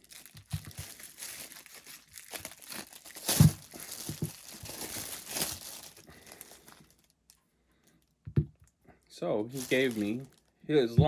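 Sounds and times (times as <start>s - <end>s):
packaging crinkling: 0.0s - 7.4s, 9.5s - 10.6s.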